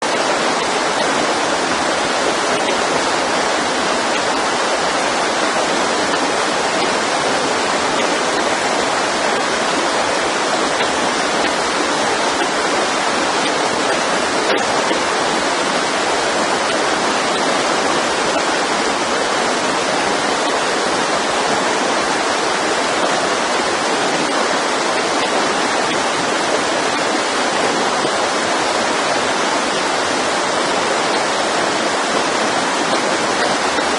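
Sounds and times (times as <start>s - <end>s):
mountain stream rushing: 0.0s - 33.9s.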